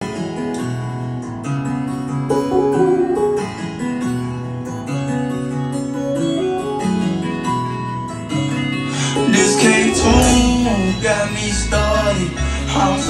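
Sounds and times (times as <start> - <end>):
plucked string melody: 0.2 - 12.5
bass line: 9.6 - 12.5.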